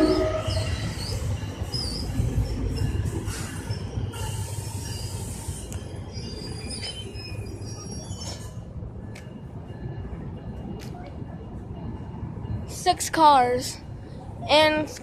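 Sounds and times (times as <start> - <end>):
train wheel squeals: 0.0 - 10.2
train rumbling: 0.0 - 15.0.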